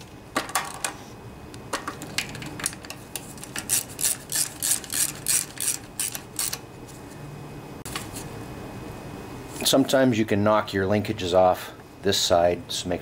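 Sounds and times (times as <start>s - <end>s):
ratchet wrench clicking: 3.7s - 6.6s.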